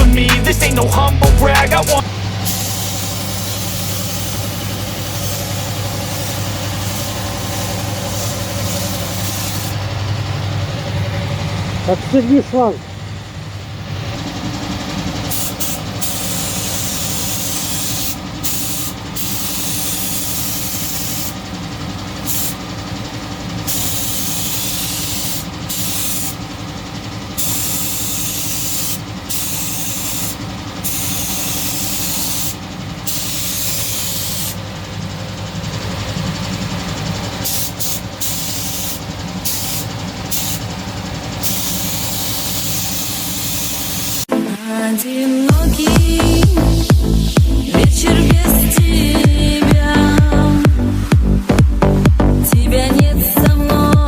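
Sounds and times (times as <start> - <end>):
machine humming: 0.0 - 44.4, 45.5 - 54.0
spray gun hissing: 2.4 - 9.8, 15.3 - 21.4, 22.2 - 22.6, 23.6 - 26.5, 27.4 - 34.6, 37.4 - 44.3.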